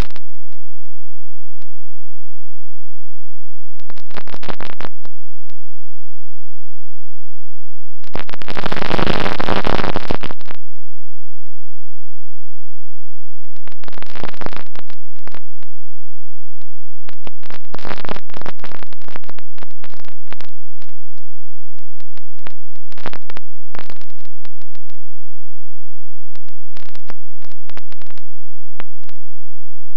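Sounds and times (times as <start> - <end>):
scattered clicks: 0.0 - 0.9, 13.5 - 15.7, 17.1 - 21.2, 21.8 - 25.0, 26.4 - 29.3
crackling static: 0.0 - 29.9.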